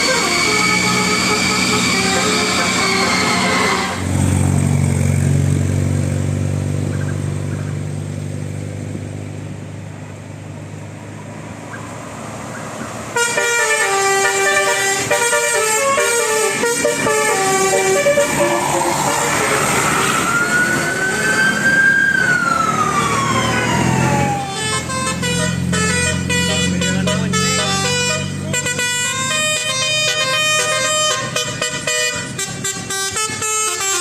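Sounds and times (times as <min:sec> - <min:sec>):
musical bus horn: 0:00.0 - 0:04.3, 0:13.1 - 0:20.4, 0:23.6 - 0:34.0.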